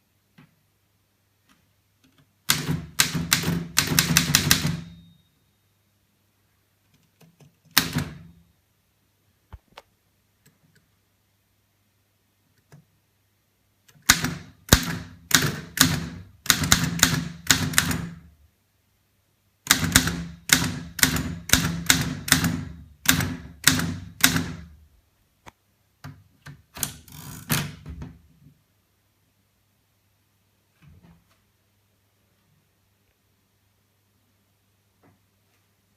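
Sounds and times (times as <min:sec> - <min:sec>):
typewriter rattle: 0:02.5 - 0:05.0, 0:14.0 - 0:18.2.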